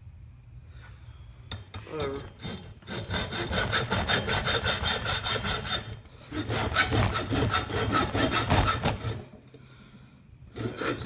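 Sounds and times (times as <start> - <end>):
hacksaw cutting: 2.1 - 9.3, 10.5 - 11.0.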